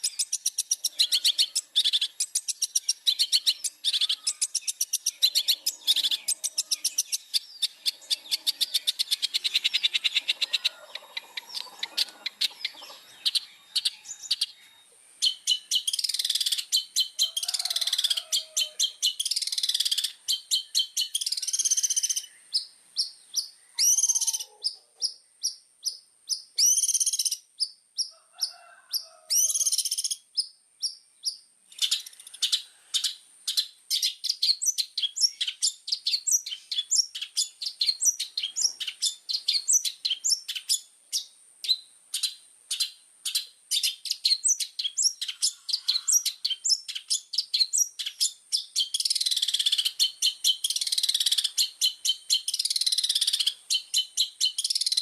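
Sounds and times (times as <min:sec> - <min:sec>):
shrike singing: 0:00.0 - 0:24.6.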